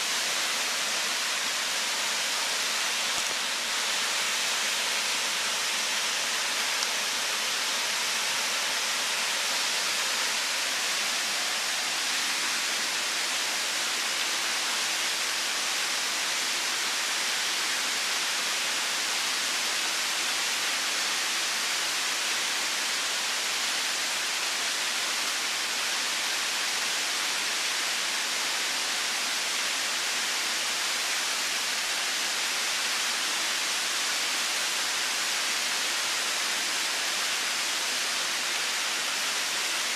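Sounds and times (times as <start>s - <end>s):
waterfall rushing: 0.0s - 24.8s.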